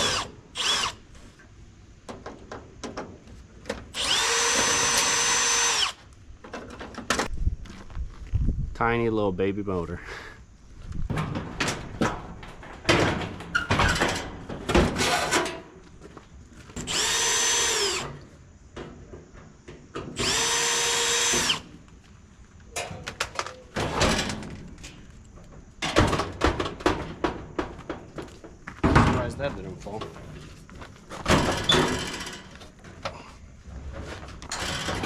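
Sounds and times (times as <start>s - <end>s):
power drill running: 0.0s - 1.0s, 4.0s - 6.0s, 16.8s - 18.1s, 20.2s - 21.6s
knocks and clanks of parts: 2.0s - 5.2s, 6.4s - 7.3s, 11.1s - 15.8s, 22.7s - 33.2s, 33.8s - 35.0s.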